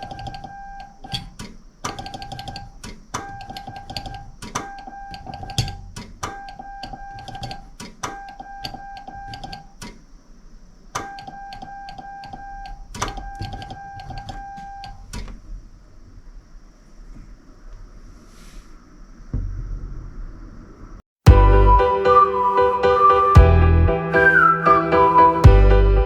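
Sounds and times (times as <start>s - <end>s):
telegraph key clicks: 0.0s - 10.0s, 11.0s - 15.3s.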